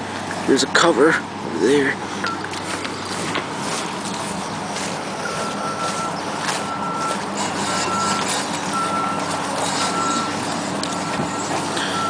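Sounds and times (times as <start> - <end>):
heavy vehicle engine running: 0.0 - 12.0
backup alarm beeping: 2.2 - 2.6, 5.2 - 12.0.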